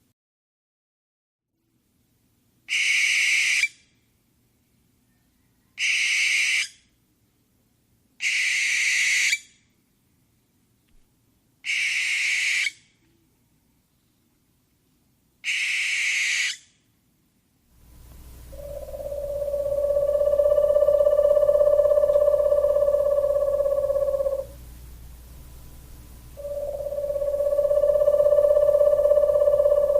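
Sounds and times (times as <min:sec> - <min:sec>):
owl screeching: 0:02.7 - 0:03.8, 0:05.8 - 0:06.8, 0:08.2 - 0:09.5, 0:11.6 - 0:12.8, 0:15.4 - 0:16.7, 0:18.5 - 0:24.6, 0:26.4 - 0:29.9
steady pitched tone: 0:18.1 - 0:29.9.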